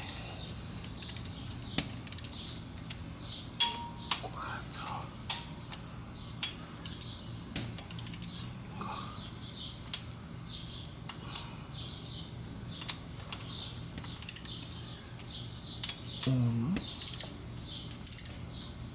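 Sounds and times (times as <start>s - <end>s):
ratchet wrench clicking: 1.0s - 1.4s, 2.0s - 3.0s, 6.4s - 7.1s, 7.8s - 8.3s, 14.1s - 14.7s, 17.0s - 18.4s.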